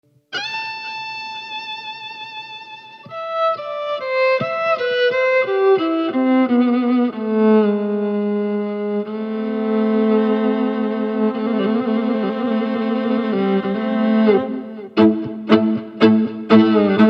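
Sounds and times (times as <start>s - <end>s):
violin playing: 0.3s - 17.0s.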